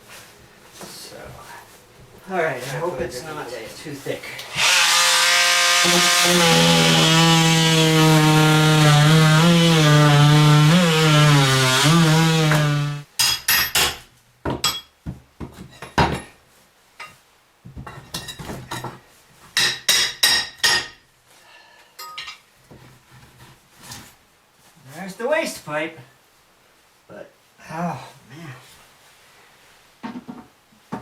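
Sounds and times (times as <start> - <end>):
oscillating saw buzzing into wood: 4.5 - 13.1.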